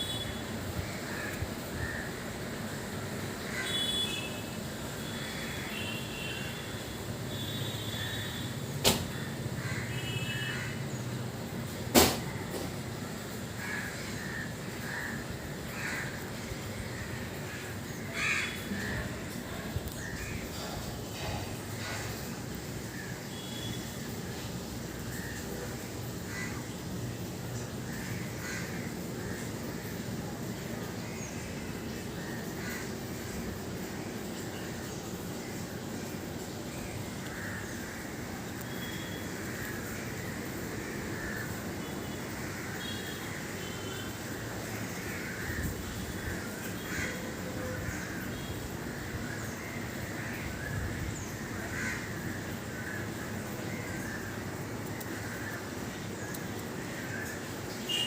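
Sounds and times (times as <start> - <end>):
bird cawing: 0.0 - 6.7, 7.3 - 10.9, 13.2 - 20.5, 25.0 - 26.8, 27.6 - 30.0, 32.2 - 33.1, 37.0 - 58.0
steady background hiss: 0.0 - 58.0.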